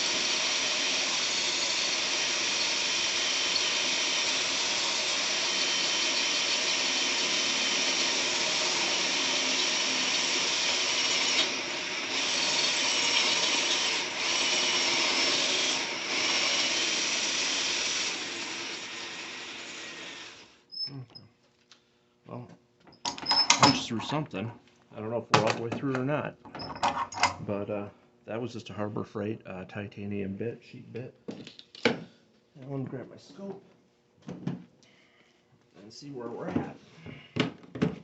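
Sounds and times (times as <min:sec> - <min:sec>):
electric drill grinding into steel: 0:00.0 - 0:20.7.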